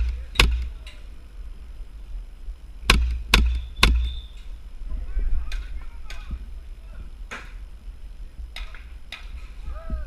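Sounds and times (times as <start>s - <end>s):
airsoft gun firing single shots: 2.9s - 4.1s.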